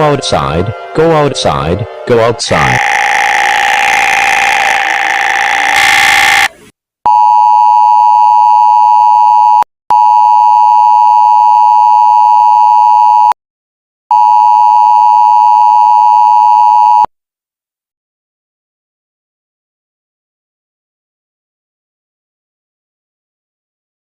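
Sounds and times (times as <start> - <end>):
long electronic beeps: 2.6 - 7.6.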